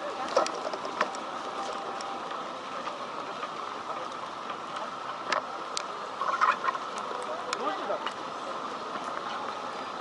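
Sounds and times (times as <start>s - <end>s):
heavy rain on a street: 0.0s - 10.0s.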